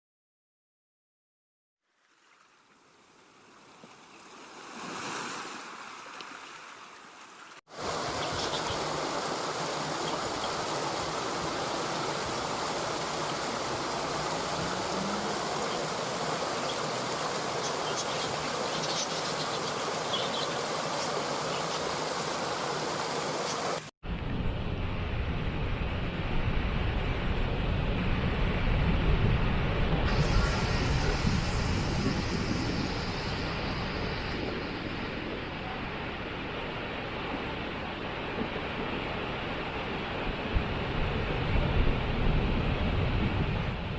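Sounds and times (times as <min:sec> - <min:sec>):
waterfall rushing: 0:07.7 - 0:23.9, 0:30.1 - 0:35.6.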